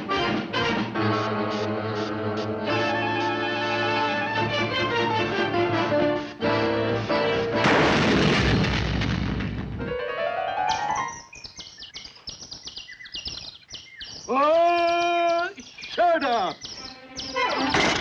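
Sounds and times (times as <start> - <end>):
orchestral music: 0.0 - 7.7
loud crash: 7.6 - 10.0
high chirping tapping effects: 10.7 - 17.7.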